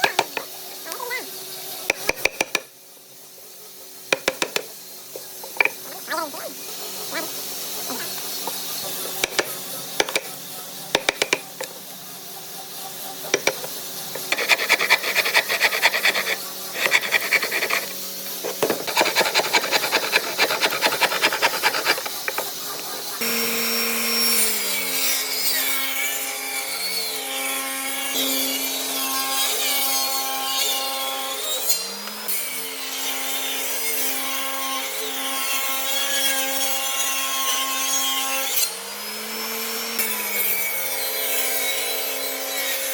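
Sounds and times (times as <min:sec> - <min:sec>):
rasping sawing strokes on wood: 0:06.6 - 0:26.2
power tool motor running: 0:07.4 - 0:25.0.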